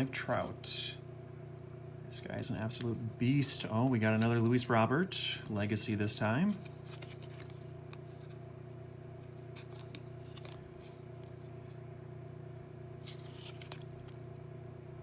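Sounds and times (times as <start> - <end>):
low electrical hum: 0.0 - 15.0
trading cards rustling and clicking: 2.4 - 8.4, 9.2 - 11.8, 13.0 - 14.4.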